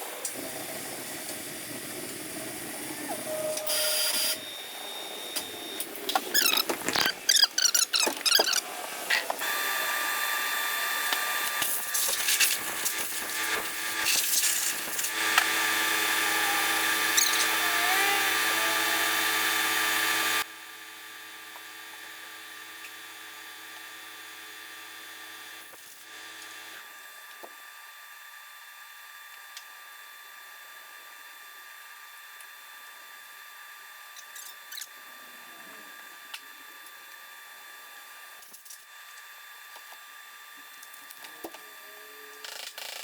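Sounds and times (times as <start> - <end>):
power tool running: 0.0 - 26.8.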